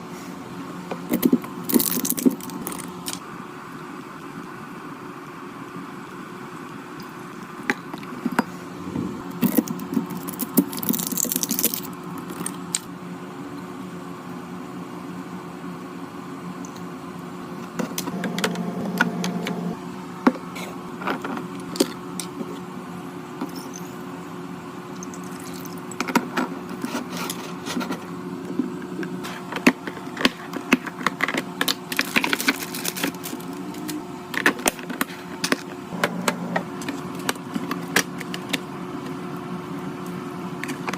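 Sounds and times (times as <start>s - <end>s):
refrigerator hum: 0.0s - 40.9s.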